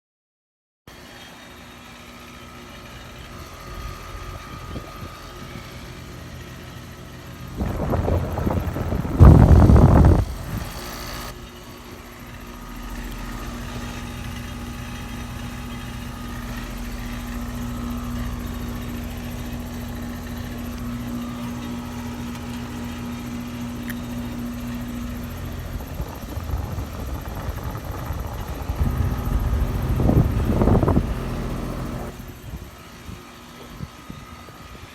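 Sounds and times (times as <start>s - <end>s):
air conditioner hum: 1.6s - 32.7s
loud rushing surge: 28.5s - 32.1s.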